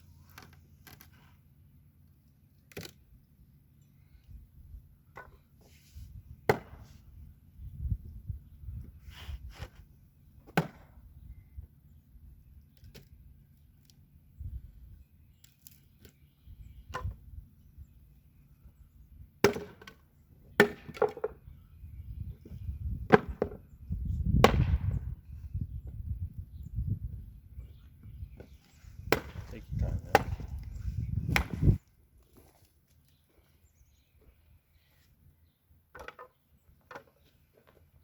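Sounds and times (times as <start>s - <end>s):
splitting tool chopping wood: 6.5s - 6.8s, 10.5s - 10.9s, 19.4s - 20.0s, 20.6s - 21.3s, 24.4s - 24.9s, 29.1s - 29.5s, 30.1s - 30.5s, 31.3s - 31.8s.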